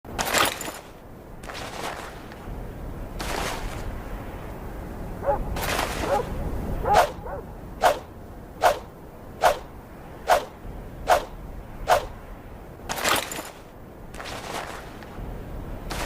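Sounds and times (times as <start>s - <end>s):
sword swishing through air: 5.5s - 7.2s, 7.8s - 12.2s.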